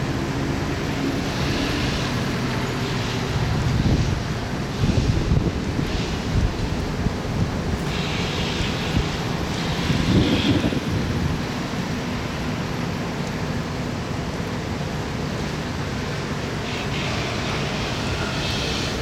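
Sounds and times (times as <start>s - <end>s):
foliage rustling in gusts: 0.1s - 12.7s
wind buffeting microphone: 0.6s - 12.6s.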